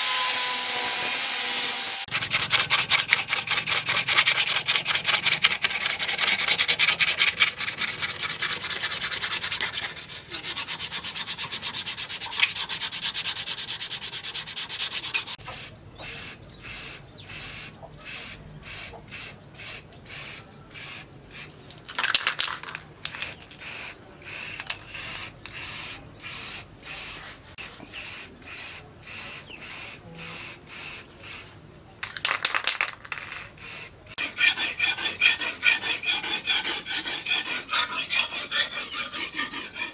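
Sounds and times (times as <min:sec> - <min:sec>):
hand sanding strokes: 0:02.0 - 0:16.2, 0:34.2 - 0:39.9.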